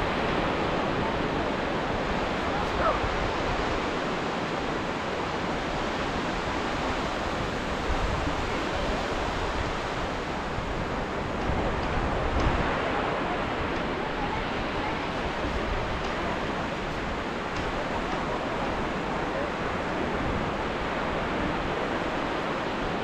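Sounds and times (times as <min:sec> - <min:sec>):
ocean waves washing: 0:00.0 - 0:23.0.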